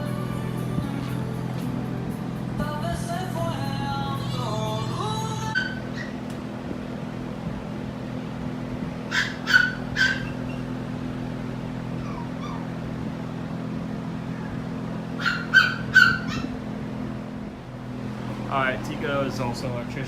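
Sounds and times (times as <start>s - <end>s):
dog barking: 5.6s - 6.2s, 9.1s - 10.6s, 15.2s - 16.6s.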